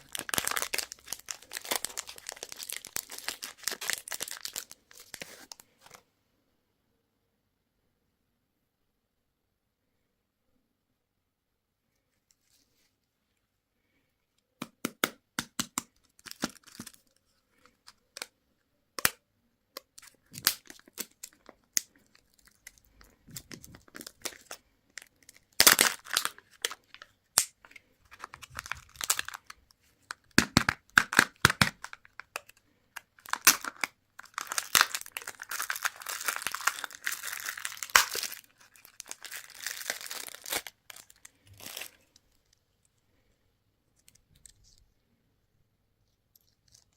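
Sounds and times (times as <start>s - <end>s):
plastic wrappers crinkling and tearing: 0.0s - 6.0s, 20.0s - 42.6s.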